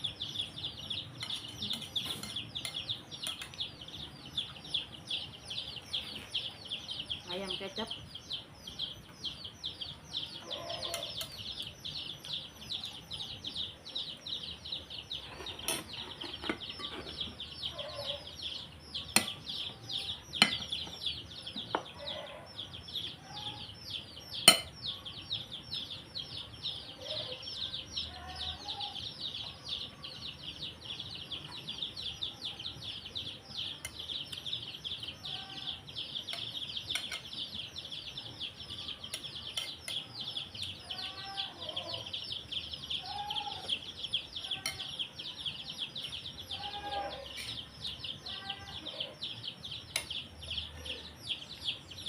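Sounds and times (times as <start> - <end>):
spoon clinking on plate: 20.4 - 20.8, 24.5 - 24.8.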